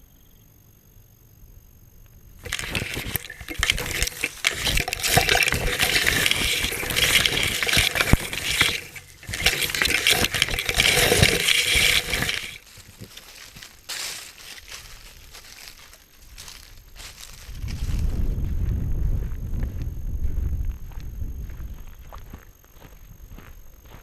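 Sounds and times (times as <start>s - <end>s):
crunching and rattling: 2.4s - 18.0s.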